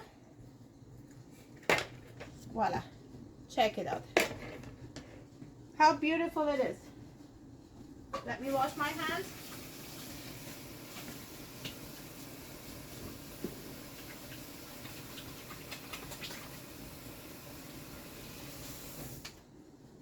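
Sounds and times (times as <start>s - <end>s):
tap water running: 8.2s - 19.4s.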